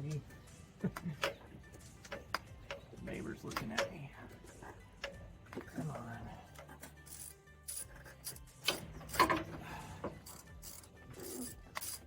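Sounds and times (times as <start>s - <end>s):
ratchet wrench clicking: 2.0s - 2.9s, 4.5s - 5.2s, 6.5s - 9.5s, 10.1s - 12.0s.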